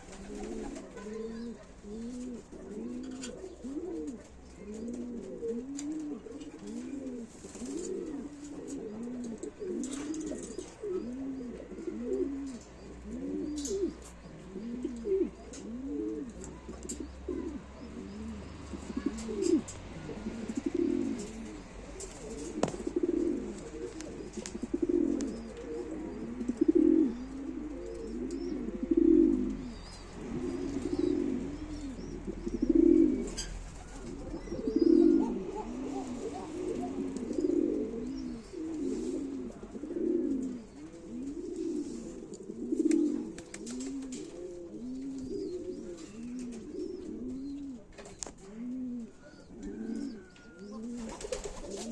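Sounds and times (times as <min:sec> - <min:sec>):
pigeons cooing: 0:00.0 - 0:51.9.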